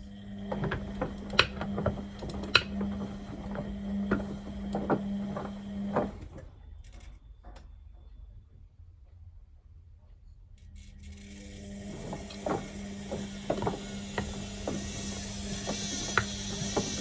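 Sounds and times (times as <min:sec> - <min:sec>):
washing machine humming: 0:00.0 - 0:06.8, 0:11.0 - 0:17.0
clicks and knocks: 0:00.5 - 0:06.3, 0:12.0 - 0:17.0.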